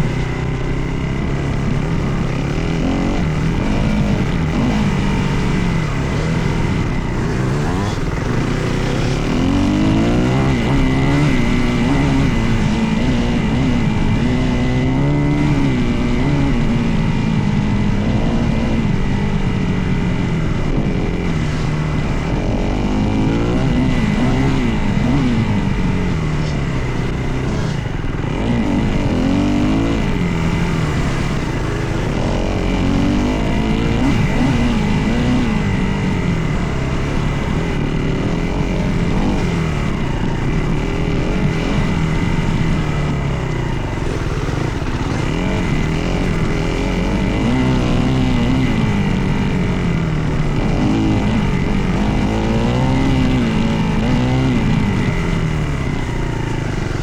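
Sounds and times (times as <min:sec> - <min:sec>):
dirt bike engine revving: 0:00.0 - 0:57.0.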